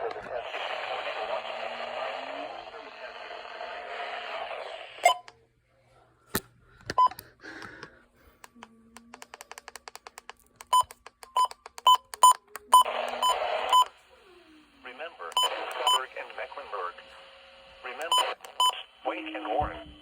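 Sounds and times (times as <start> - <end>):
radio hiss bursts: 0.2 - 5.2, 12.8 - 14.1, 14.8 - 20.0.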